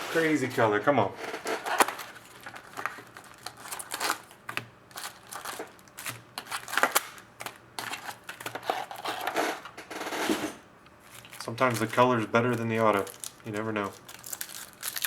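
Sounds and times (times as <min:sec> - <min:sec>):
cards snapping and rustling: 0:01.5 - 0:09.3
wrapper crinkling: 0:01.6 - 0:09.2, 0:11.0 - 0:15.0.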